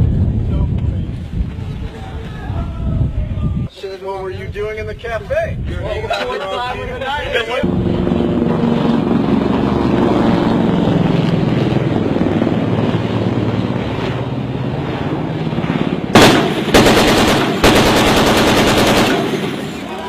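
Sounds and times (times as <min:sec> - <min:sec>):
machine-gun fire: 0:16.1 - 0:19.8.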